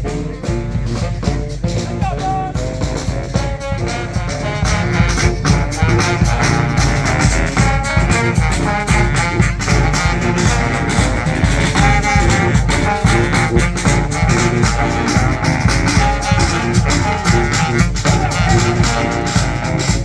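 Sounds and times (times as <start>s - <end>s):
brass band playing: 0.0s - 20.0s
steady drum beat: 0.0s - 20.0s.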